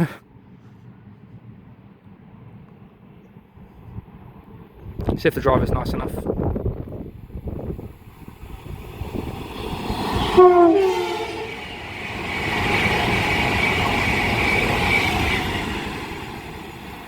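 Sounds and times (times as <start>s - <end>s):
train rushing past with whine: 0.2s - 17.0s
two-note train horn: 10.3s - 11.7s.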